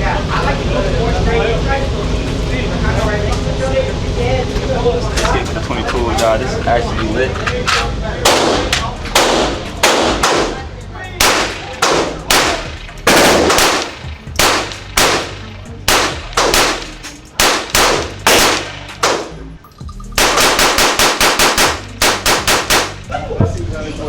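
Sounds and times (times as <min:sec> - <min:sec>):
gunshots echoing indoors: 0:08.3 - 0:10.6, 0:11.2 - 0:19.4, 0:20.2 - 0:23.1.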